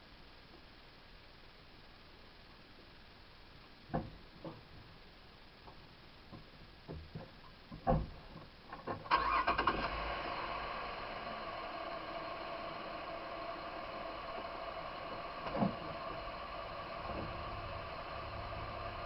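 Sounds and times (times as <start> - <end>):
vehicle engine starting and running: 8.9 - 19.0.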